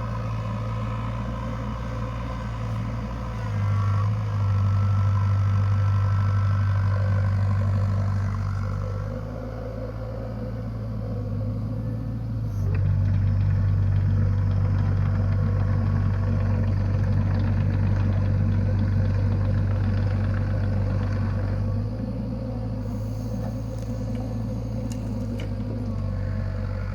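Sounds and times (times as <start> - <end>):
excavator diesel engine running: 0.0 - 26.9
faint clicks: 23.4 - 26.1.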